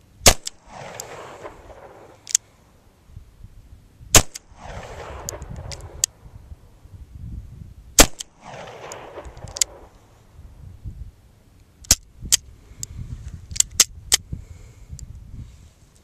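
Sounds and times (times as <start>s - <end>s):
revolver shots echoing: 0.3s - 2.2s, 4.2s - 6.0s, 8.0s - 9.9s
light crack: 0.3s - 2.5s, 4.2s - 6.2s, 8.0s - 10.0s.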